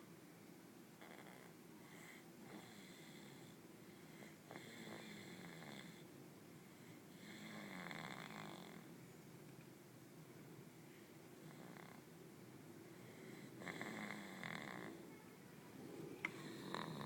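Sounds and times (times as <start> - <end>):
person snoring softly: 1.0 - 6.0, 6.7 - 8.9, 11.4 - 12.1, 12.9 - 15.0, 16.3 - 17.0.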